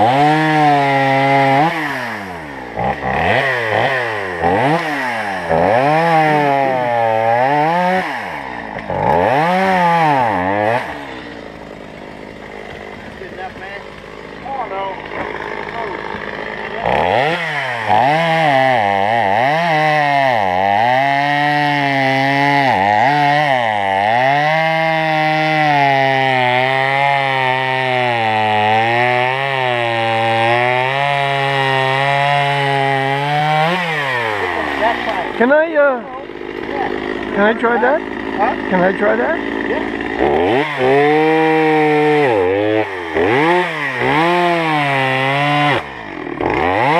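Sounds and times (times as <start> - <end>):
chainsaw engine revving: 0.0 - 46.9.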